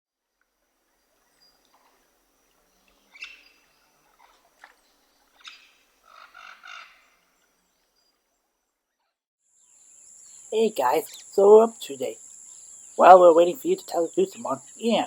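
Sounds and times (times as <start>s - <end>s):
birds chirping: 10.0s - 15.0s.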